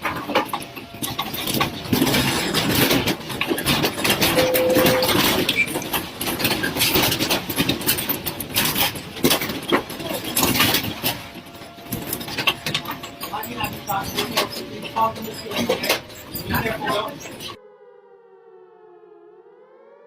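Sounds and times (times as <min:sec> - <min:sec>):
building rattling and rumbling: 0:00.0 - 0:17.6
steady tone: 0:04.3 - 0:05.3.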